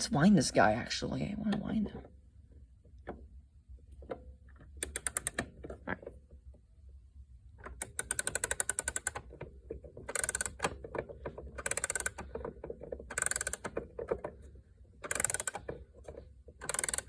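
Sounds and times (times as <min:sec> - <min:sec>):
clock ratchet clicking: 0:04.8 - 0:05.5, 0:07.8 - 0:09.2, 0:10.1 - 0:10.8, 0:11.6 - 0:12.3, 0:13.1 - 0:13.8, 0:15.0 - 0:15.7, 0:16.6 - 0:17.0.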